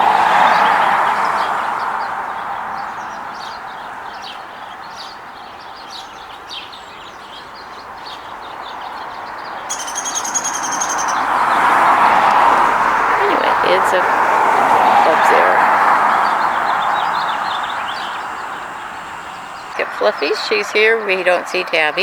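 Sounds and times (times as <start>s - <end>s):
passing road traffic: 0.0s - 22.0s
small birds chirping: 0.0s - 22.0s
pulsed high-pitched bird call: 9.7s - 21.4s.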